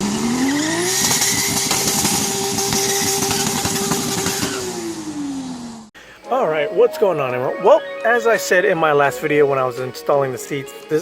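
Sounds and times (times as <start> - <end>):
engine revving with crackling rasp: 0.0 - 5.9.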